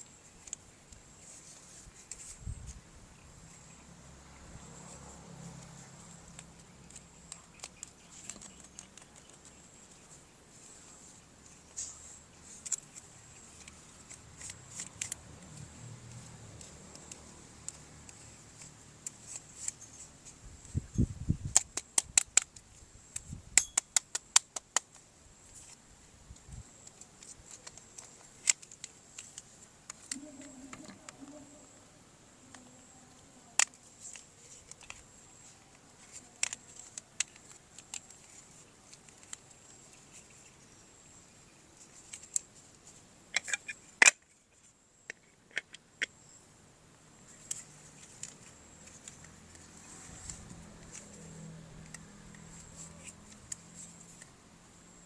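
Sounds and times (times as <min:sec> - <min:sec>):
plastic toy parts clicking: 0:06.0 - 0:09.6, 0:12.4 - 0:15.3, 0:21.4 - 0:25.0, 0:26.8 - 0:31.4, 0:33.6 - 0:40.3, 0:43.3 - 0:44.3.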